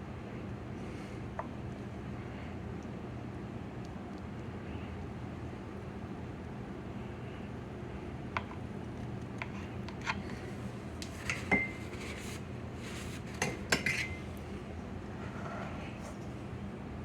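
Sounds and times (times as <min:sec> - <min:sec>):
steady low hum: 0:00.0 - 0:17.0
dishes and utensils clinking: 0:13.4 - 0:14.2.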